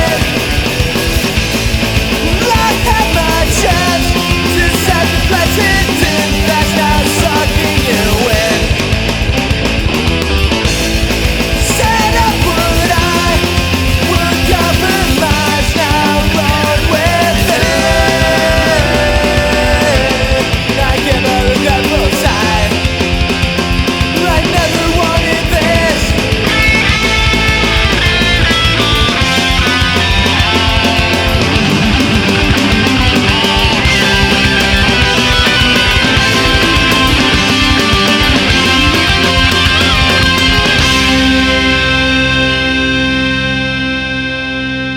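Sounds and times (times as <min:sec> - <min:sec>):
rock music with distorted guitars: 0:00.0 - 0:44.9.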